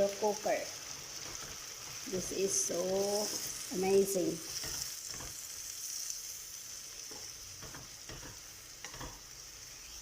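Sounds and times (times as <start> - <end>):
masala sizzling in hot oil: 0.0 - 10.0
spoon knocking and scraping pot: 7.1 - 9.2.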